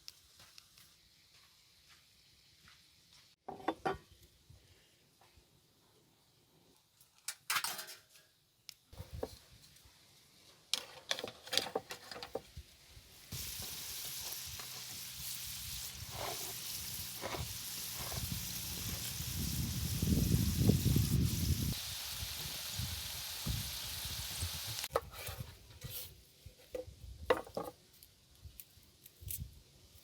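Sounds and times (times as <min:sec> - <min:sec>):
food sizzling in a pan: 0:13.0 - 0:24.9.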